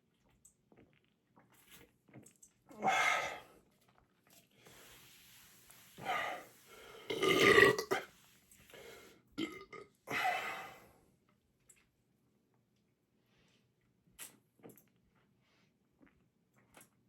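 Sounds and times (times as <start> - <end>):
man belching: 7.1 - 8.0, 9.4 - 9.8.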